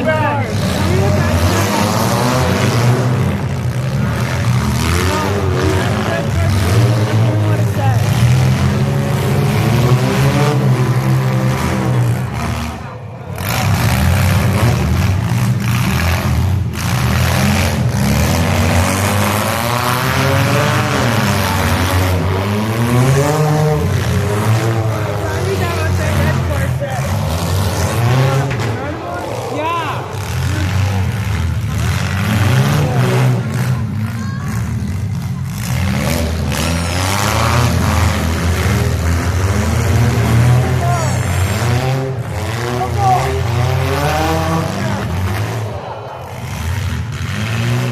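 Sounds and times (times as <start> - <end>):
car engines revving: 0.0 - 47.9.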